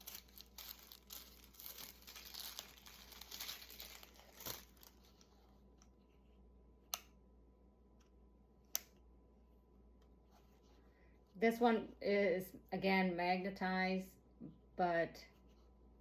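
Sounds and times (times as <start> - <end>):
wrapping paper crinkling: 0.0 - 5.6.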